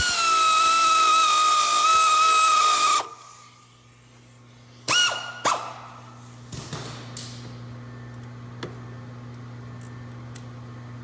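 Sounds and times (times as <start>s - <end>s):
air tool spinning: 0.0s - 3.5s
steady low hum: 3.0s - 11.0s.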